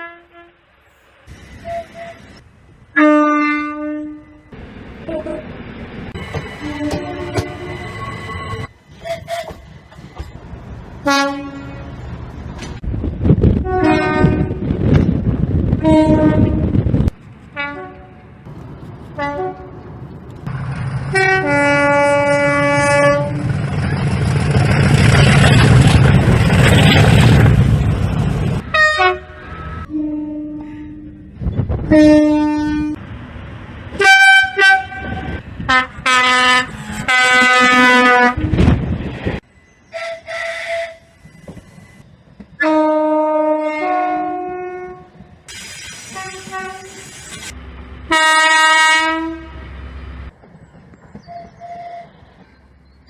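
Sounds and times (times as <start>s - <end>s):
train horn blasts: 0.0s - 0.6s, 1.6s - 4.6s, 6.6s - 8.0s, 11.0s - 11.9s, 13.6s - 14.8s, 15.8s - 16.8s, 17.6s - 18.2s, 19.2s - 19.8s, 21.1s - 23.5s, 28.7s - 31.3s, 31.9s - 33.0s, 34.0s - 38.7s, 39.9s - 41.2s, 42.6s - 45.2s, 46.1s - 47.0s, 48.1s - 49.7s
train passing with rushing rumble: 0.0s - 53.0s.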